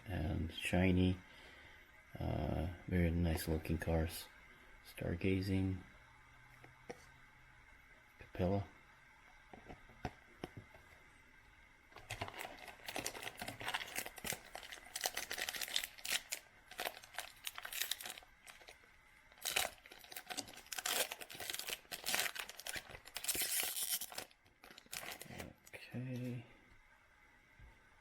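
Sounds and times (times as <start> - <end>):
foil wrapper crinkling and tearing: 12.0 - 25.7.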